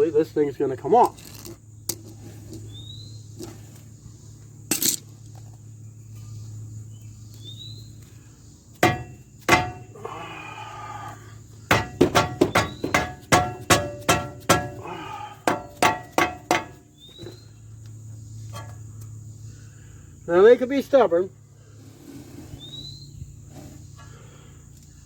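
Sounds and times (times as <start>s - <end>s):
hammer striking steel: 8.8s - 9.9s, 11.7s - 16.8s.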